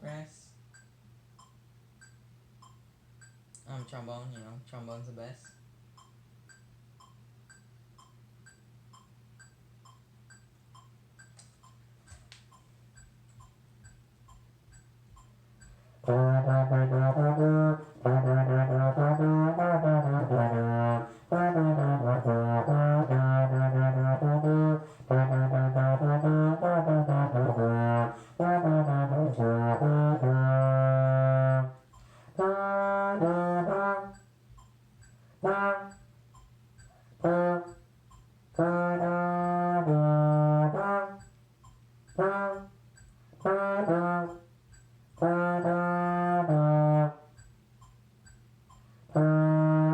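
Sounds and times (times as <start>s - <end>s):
solo trombone melody: 16.0s - 34.2s, 35.4s - 36.0s, 37.2s - 37.8s, 38.5s - 41.2s, 42.2s - 42.8s, 43.4s - 44.5s, 45.2s - 47.3s, 49.1s - 49.9s.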